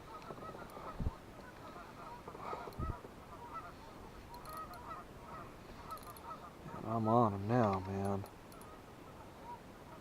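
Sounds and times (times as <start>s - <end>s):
geese honking: 0.0s - 7.4s.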